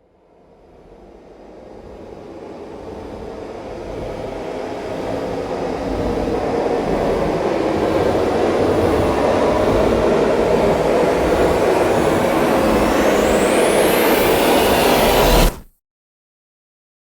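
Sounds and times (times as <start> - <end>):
dense rumbling riser: 1.6 - 15.7
thin whistling tone sweeping upward: 9.2 - 15.7.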